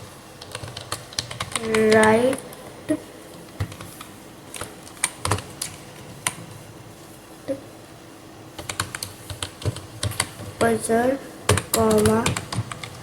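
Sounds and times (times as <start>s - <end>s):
computer keyboard typing: 0.4s - 2.4s, 3.6s - 6.4s, 8.6s - 10.8s, 11.5s - 13.0s.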